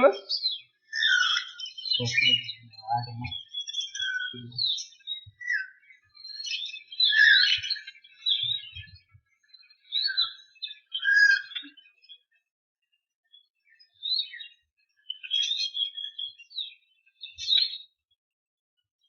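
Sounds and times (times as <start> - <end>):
budgerigars chirping: 0.0 - 9.1, 9.8 - 11.8.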